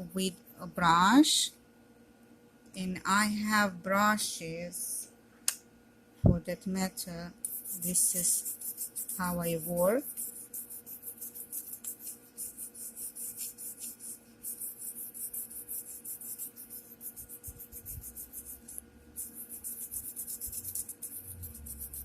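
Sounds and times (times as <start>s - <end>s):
brush scrubbing metal: 7.4s - 22.0s.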